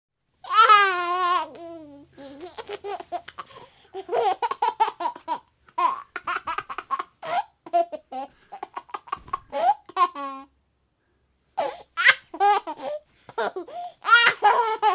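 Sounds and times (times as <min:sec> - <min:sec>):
baby giggling: 0:00.4 - 0:10.5, 0:11.6 - 0:14.9
baby squealing: 0:11.6 - 0:14.9.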